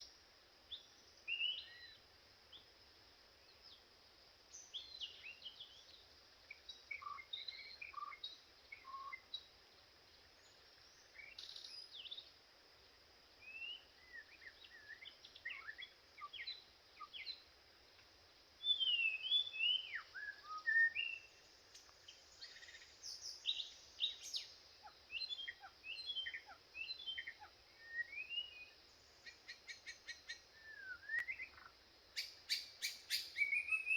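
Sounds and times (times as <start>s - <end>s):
steady high hiss: 0.0s - 33.9s
bird singing whistled phrases: 1.3s - 2.0s, 13.4s - 17.3s, 18.6s - 21.4s, 22.4s - 33.9s.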